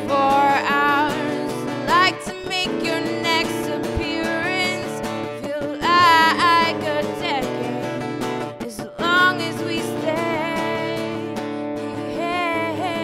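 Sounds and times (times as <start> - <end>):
person singing: 0.0 - 13.0
strummed guitar: 0.0 - 13.0.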